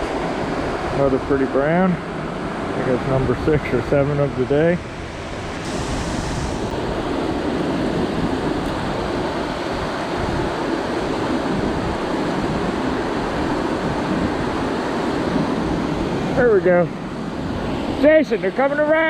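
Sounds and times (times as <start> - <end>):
river water rushing: 4.9 - 18.2.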